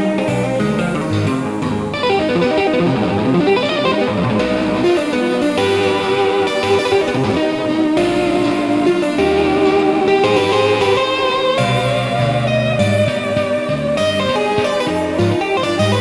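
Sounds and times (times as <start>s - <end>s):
plucked electric guitar: 0.0s - 16.0s
bass line: 0.3s - 16.0s.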